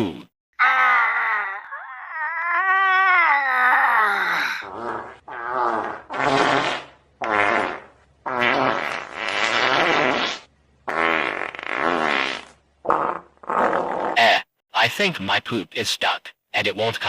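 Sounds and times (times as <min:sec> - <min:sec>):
fart sounds: 0:04.6 - 0:14.5.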